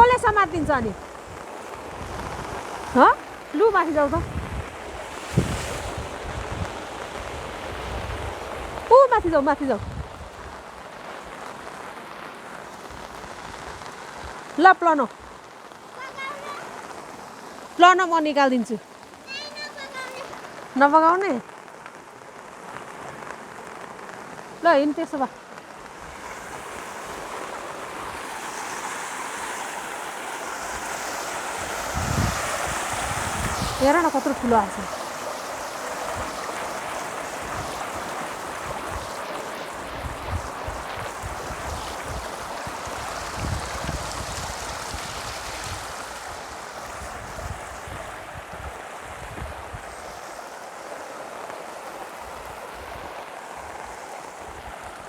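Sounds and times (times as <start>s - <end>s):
wind buffeting microphone: 0.0s - 10.8s, 25.9s - 50.2s
heavy rain: 0.0s - 55.0s
rushing runoff water: 0.0s - 55.0s.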